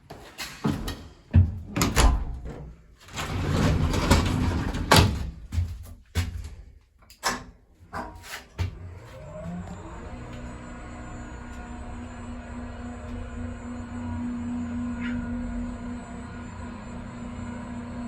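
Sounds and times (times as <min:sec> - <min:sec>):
sliding door scraping: 0:03.1 - 0:05.4.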